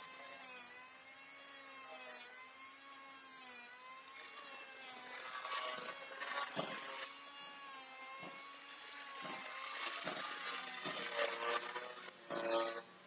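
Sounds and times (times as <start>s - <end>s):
electric blower whirring: 8.2s - 12.8s.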